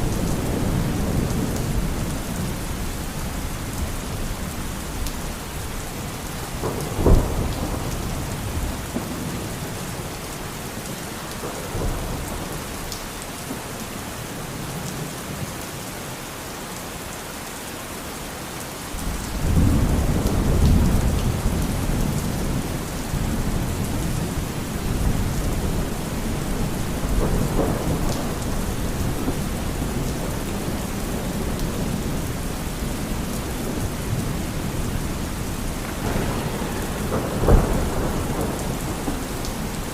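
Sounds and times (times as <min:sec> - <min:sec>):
low rumble of thunder: 0:00.0 - 0:13.7, 0:19.0 - 0:39.9
steady rain falling: 0:00.0 - 0:39.9
sharp thunderclap: 0:06.6 - 0:09.6, 0:19.0 - 0:39.9.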